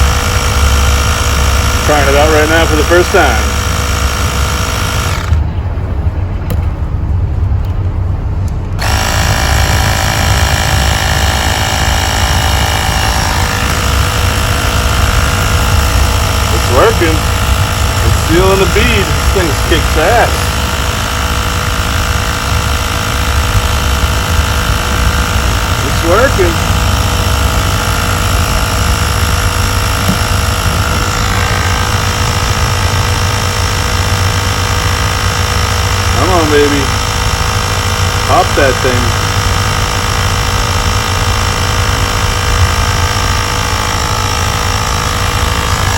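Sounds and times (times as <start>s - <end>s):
air compressor running: 0.0s - 45.9s.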